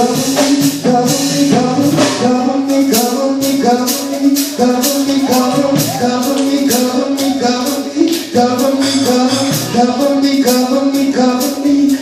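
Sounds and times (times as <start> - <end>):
gospel music with held chords: 0.0 - 12.0.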